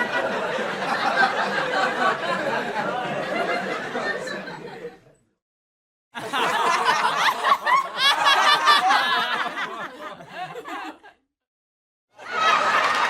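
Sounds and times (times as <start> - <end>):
audience laughter: 0.0 - 5.2, 6.2 - 11.2, 12.2 - 13.0
applause: 12.3 - 13.0.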